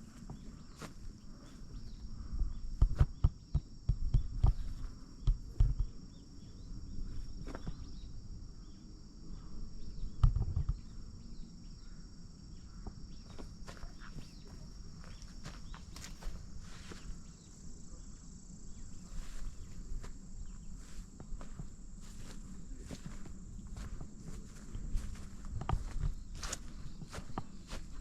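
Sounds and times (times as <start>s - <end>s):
footsteps on forest path: 0.0s - 1.9s, 13.2s - 17.5s, 18.7s - 28.0s
insects buzzing: 0.0s - 28.0s.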